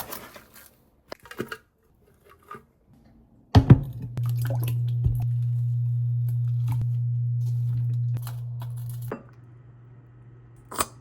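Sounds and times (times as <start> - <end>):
low electrical hum: 3.6 - 11.0.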